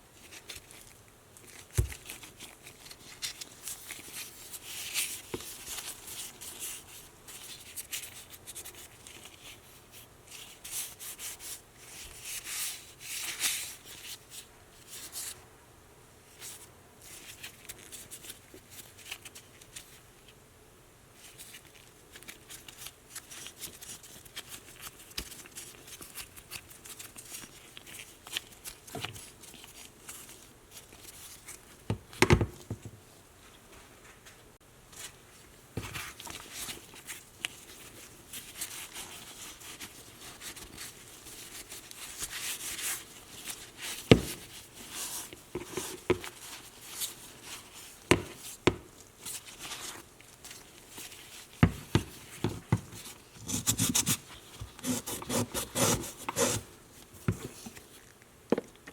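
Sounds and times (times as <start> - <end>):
hand rubbing and scraping: 37.8 - 58.0.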